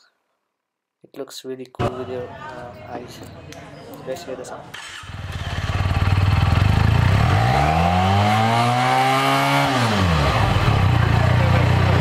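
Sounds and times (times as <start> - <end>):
motorcycle engine idling and revving: 4.7 - 12.0.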